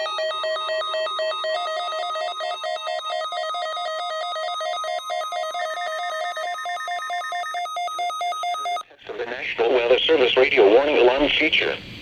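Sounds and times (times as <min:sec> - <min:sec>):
alternating two-tone electronic beeping: 0:00.0 - 0:08.8
steady warning alarm tone: 0:00.0 - 0:08.8.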